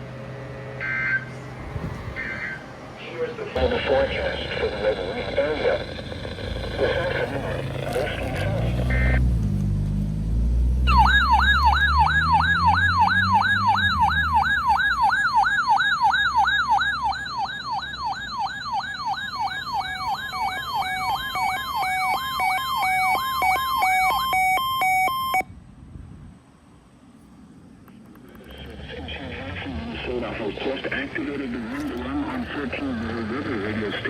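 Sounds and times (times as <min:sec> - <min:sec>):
low rumble: 0:00.0 - 0:11.0
hi-lo two-tone siren: 0:00.8 - 0:01.3, 0:02.1 - 0:02.7, 0:03.6 - 0:09.2, 0:10.8 - 0:25.5
siren yelping: 0:00.8 - 0:01.3, 0:02.1 - 0:09.2, 0:10.8 - 0:25.4.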